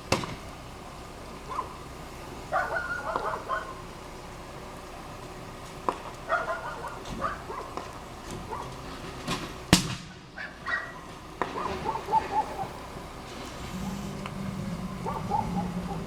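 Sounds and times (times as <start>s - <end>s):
dogs barking: 1.4s - 3.9s, 6.2s - 8.9s, 10.1s - 16.0s
sharp pops: 9.3s - 10.2s
loud sharp bang: 9.7s - 10.2s.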